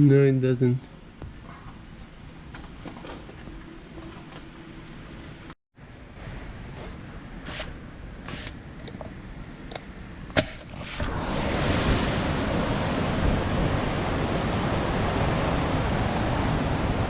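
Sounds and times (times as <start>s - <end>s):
hurricane-force wind: 10.8s - 17.0s.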